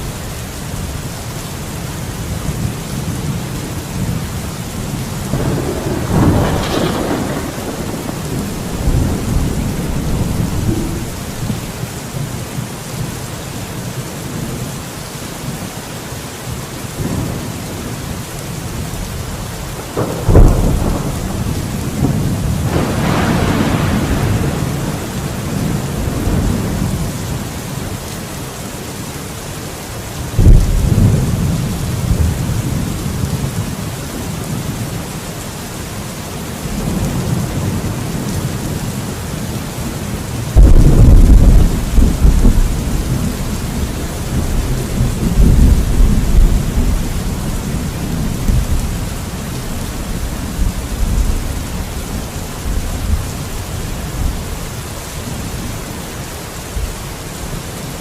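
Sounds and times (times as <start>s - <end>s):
heavy rain: 0.0s - 58.0s
thunder rumbling: 2.2s - 12.7s, 17.0s - 28.0s, 30.3s - 35.0s, 36.6s - 55.8s
thunderclap: 5.3s - 11.8s, 19.8s - 27.2s, 30.4s - 32.8s, 40.5s - 53.2s.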